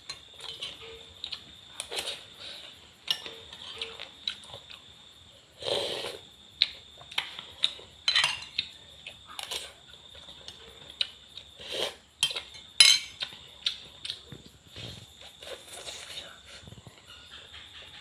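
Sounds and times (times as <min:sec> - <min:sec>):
cutlery clinking against dishes: 0:00.0 - 0:01.1, 0:03.0 - 0:04.1, 0:08.0 - 0:08.7, 0:12.2 - 0:13.3.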